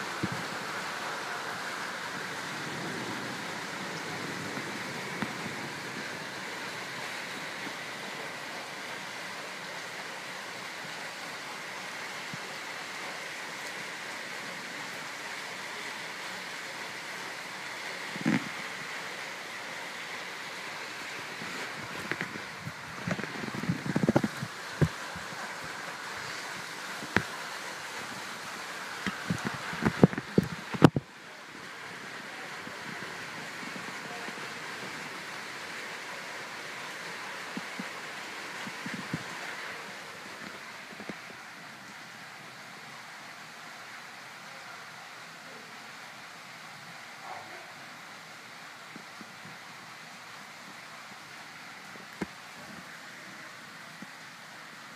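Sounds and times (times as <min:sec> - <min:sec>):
rain falling: 0:00.0 - 0:54.9.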